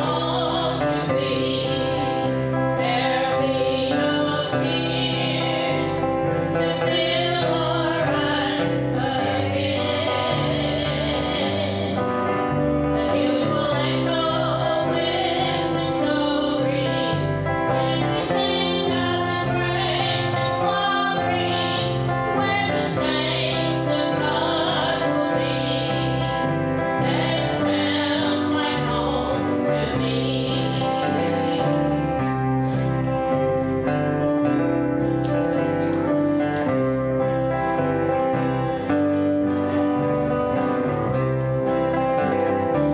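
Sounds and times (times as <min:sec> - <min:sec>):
several voices singing together: 0:00.0 - 0:32.4
instrumental backing: 0:00.0 - 0:42.9.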